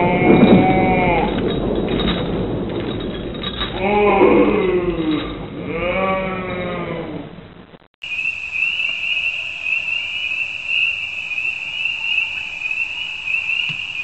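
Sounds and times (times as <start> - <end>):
pulsing high insect trill: 8.0 - 14.0.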